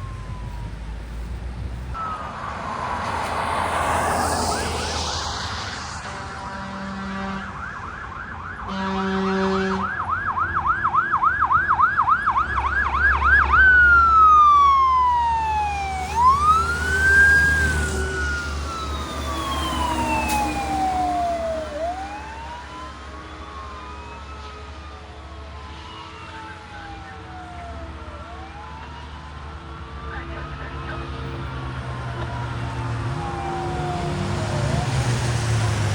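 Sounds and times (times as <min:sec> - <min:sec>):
truck engine rumbling: 0:00.0 - 0:07.7, 0:12.7 - 0:24.0, 0:26.8 - 0:35.9
fire truck siren wailing: 0:00.0 - 0:35.9
horn blasts: 0:06.0 - 0:07.7, 0:08.7 - 0:10.0.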